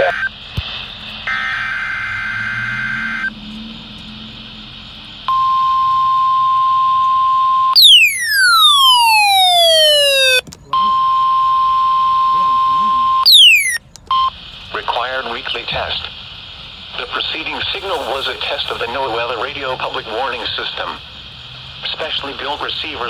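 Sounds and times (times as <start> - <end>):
radio hiss: 0.0 - 3.4, 8.1 - 10.4, 12.4 - 23.0
steady alarm tone: 1.2 - 3.3, 5.2 - 10.4, 11.0 - 13.8
falling tone sweep: 7.8 - 10.4.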